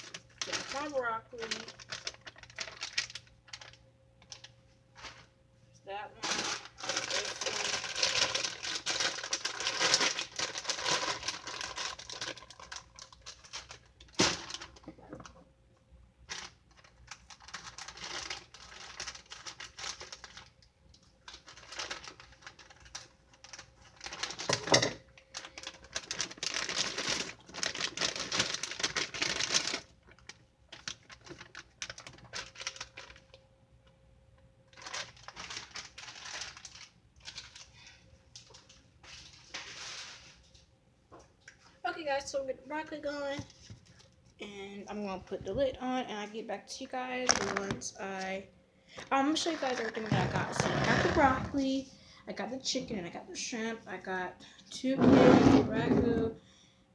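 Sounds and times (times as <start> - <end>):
plastic packaging crinkling: 0.0 - 5.3, 6.2 - 15.3, 16.2 - 33.4, 34.7 - 40.6, 46.9 - 48.4, 49.0 - 51.8.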